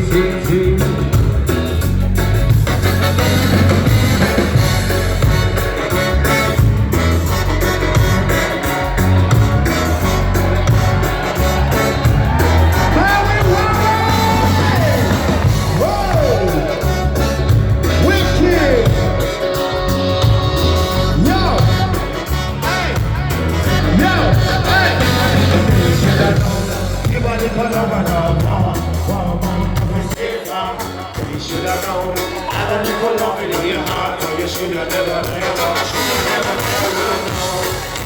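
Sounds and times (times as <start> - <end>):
heavy bass line: 0.0 - 38.0
live band playing loud music: 0.0 - 38.0
person singing: 12.3 - 17.2.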